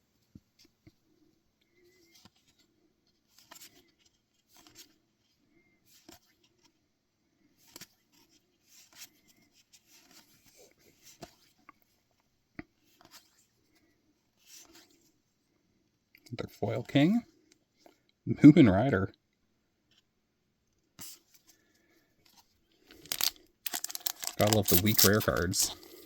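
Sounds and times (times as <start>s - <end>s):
trading cards swishing and ticking: 23.0s - 25.8s.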